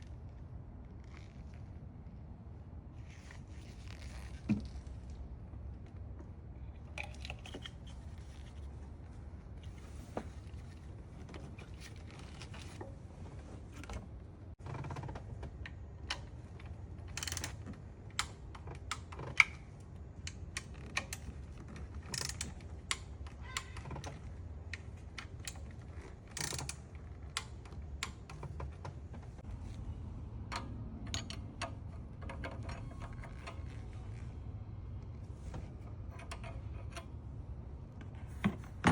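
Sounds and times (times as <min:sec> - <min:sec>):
low steady hum: 0:15.6 - 0:38.9.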